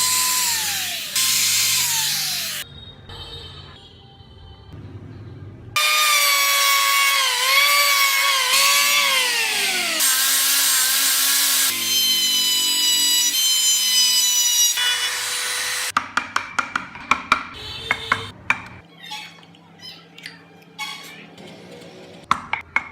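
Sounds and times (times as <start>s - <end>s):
power tool cutting wood: 0.0s - 2.6s, 5.8s - 15.9s.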